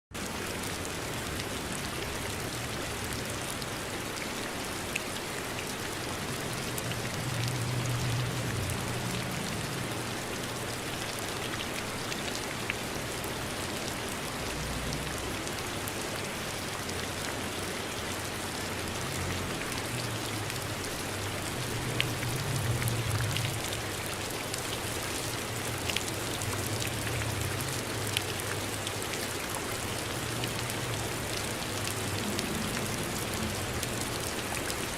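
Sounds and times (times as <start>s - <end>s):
steady rain hiss: 0.2s - 34.9s.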